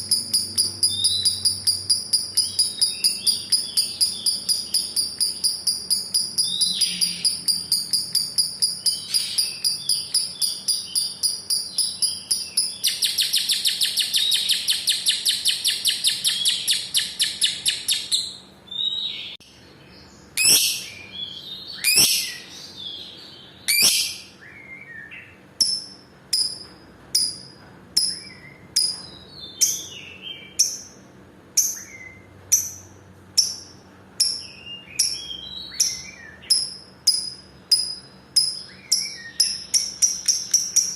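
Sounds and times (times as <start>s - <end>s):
lovebird chattering: 0.0s - 18.4s, 20.4s - 21.0s, 21.7s - 22.5s, 23.7s - 24.4s, 31.6s - 40.9s.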